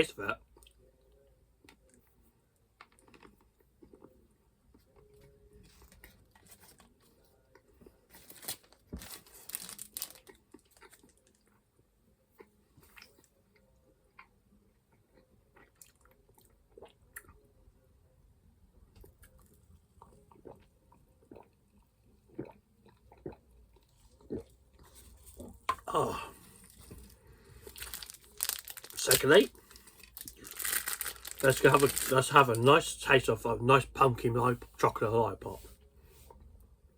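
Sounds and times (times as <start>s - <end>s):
person chewing and crunching candy: 2.8s - 11.6s, 12.3s - 17.5s, 19.0s - 32.6s.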